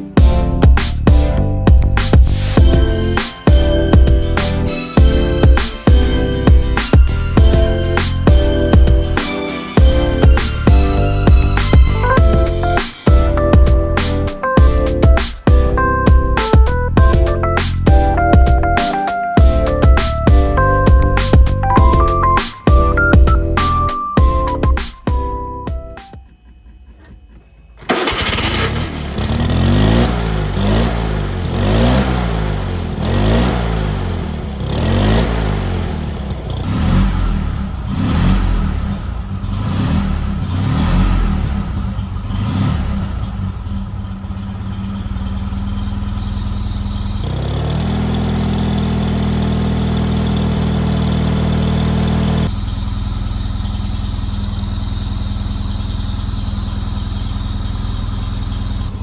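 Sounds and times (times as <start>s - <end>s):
small car engine revving and idling: 26.2s - 59.0s.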